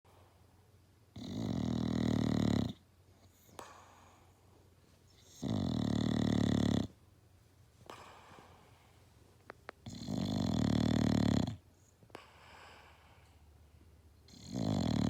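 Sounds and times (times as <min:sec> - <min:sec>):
dog snoring loudly: 0:01.1 - 0:02.8, 0:05.2 - 0:07.0, 0:09.8 - 0:11.6, 0:14.3 - 0:15.0.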